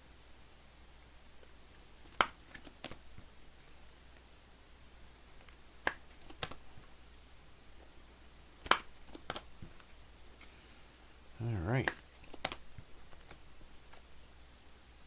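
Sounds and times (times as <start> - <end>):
trading cards clicking and tapping: 1.8 - 3.0, 5.3 - 6.7, 8.6 - 9.9, 11.8 - 14.1.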